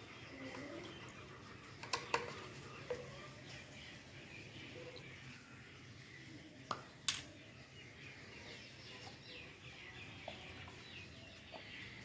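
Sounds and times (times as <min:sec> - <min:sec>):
chicks peeping: 0:07.8 - 0:12.0.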